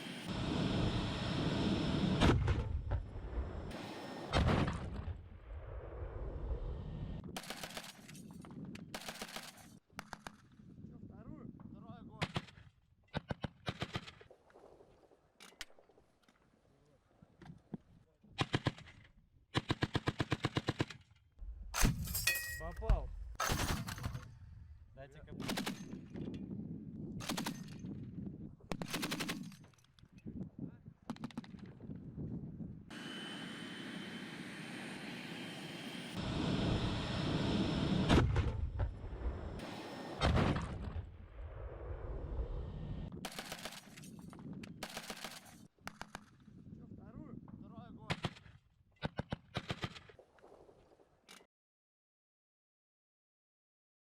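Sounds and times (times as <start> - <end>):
gunshots: 19.6 - 22.2, 22.9 - 24.4, 25.4 - 26.0, 43.2 - 44.0
rifle fire: 23.3 - 24.5, 25.4 - 26.0, 43.2 - 44.0.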